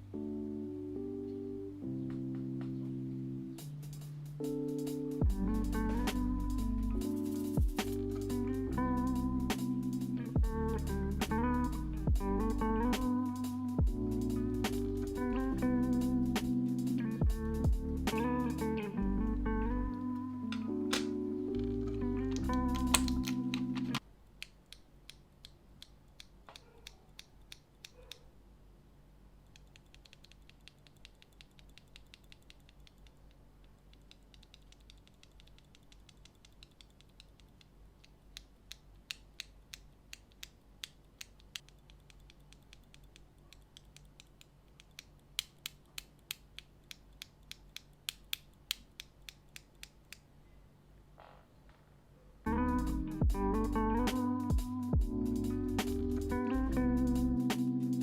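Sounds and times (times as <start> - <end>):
keyboard switches clicking: 19.9 - 28.3.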